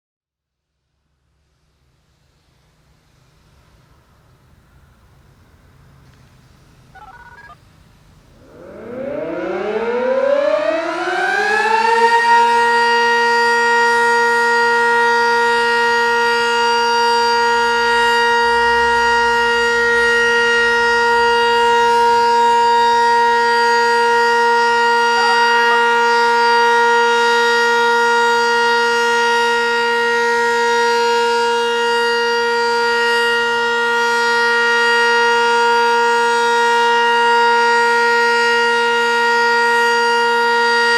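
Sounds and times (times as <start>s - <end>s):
tornado siren winding up: 6.9s - 7.6s, 8.4s - 13.8s.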